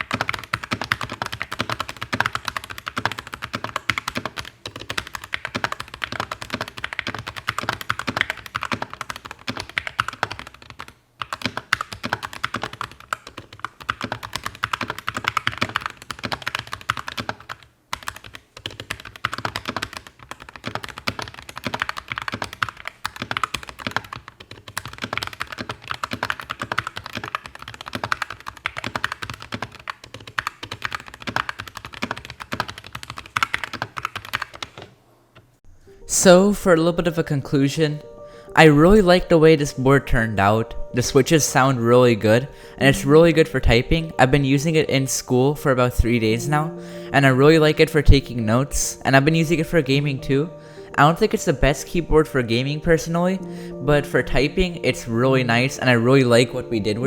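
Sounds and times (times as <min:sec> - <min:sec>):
mechanical keyboard typing: 0:00.0 - 0:35.0.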